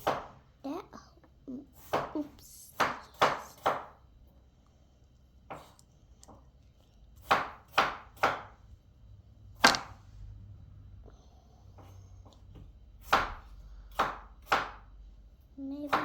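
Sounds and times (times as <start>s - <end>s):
taps and knocks on tabletop: 9.6s - 9.9s.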